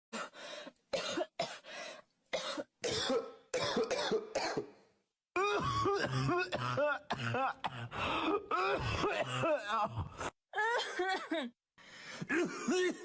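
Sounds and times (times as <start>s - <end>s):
person coughing: 1.0s - 1.6s, 2.4s - 4.7s, 5.4s - 9.7s, 12.3s - 13.0s.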